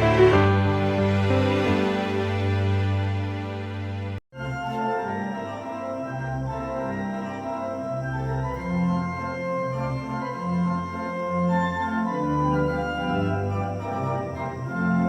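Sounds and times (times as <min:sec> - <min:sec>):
keyboard chords: 0:00.0 - 0:03.8.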